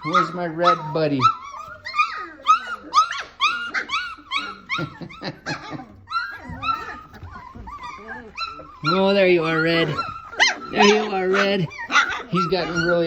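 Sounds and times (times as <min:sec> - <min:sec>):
puppies yipping and whining: 0:00.0 - 0:13.0.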